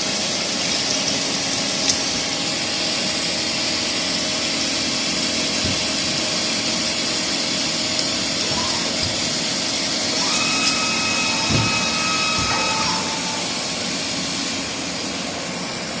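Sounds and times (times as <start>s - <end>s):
boring mill machine running: 0.0s - 16.0s
thin high whine: 8.3s - 15.3s.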